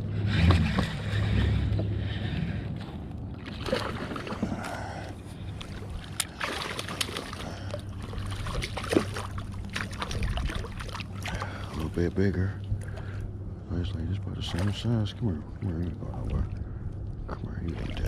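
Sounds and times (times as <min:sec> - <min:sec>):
steady low rumble: 0:00.0 - 0:18.0
water: 0:00.0 - 0:18.0
sharp splashes: 0:03.4 - 0:04.7, 0:05.6 - 0:11.8.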